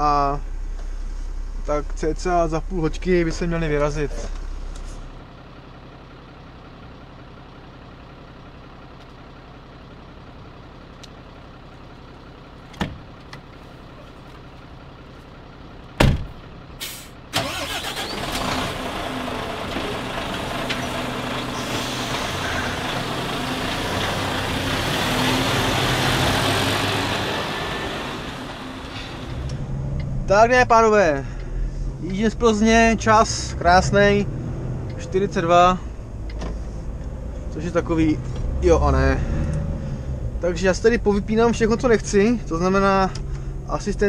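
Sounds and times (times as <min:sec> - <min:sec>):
low steady hum: 0:00.0 - 0:06.8
diesel truck engine: 0:00.0 - 0:44.0
road noise: 0:00.0 - 0:44.0.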